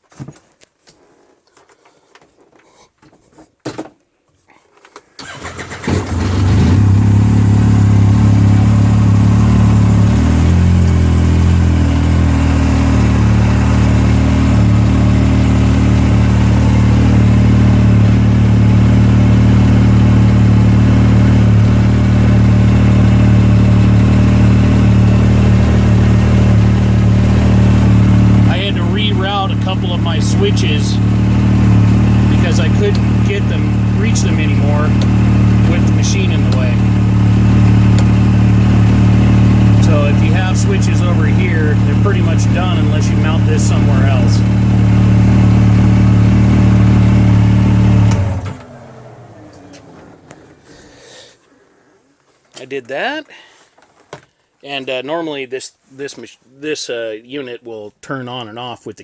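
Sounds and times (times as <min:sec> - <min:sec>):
engine cranking and idling: 0:05.2 - 0:52.6.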